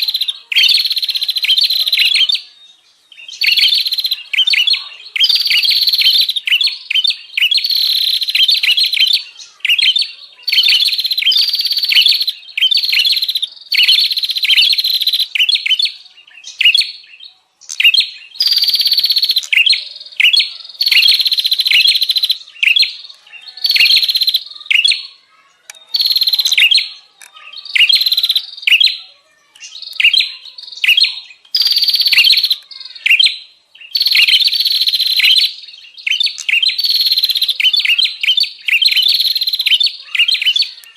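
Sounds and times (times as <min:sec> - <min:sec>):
birds chattering in buzzy bursts: 0:17.6 - 0:40.8.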